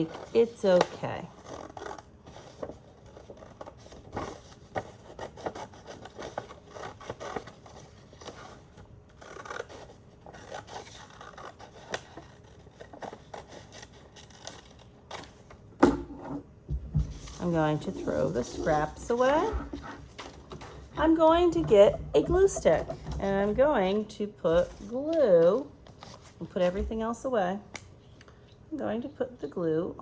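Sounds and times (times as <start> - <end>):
paper rustling: 0.0 - 15.4.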